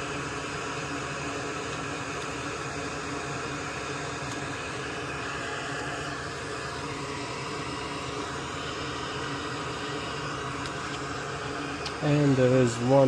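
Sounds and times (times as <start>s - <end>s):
small fan whooshing: 0.0s - 13.0s.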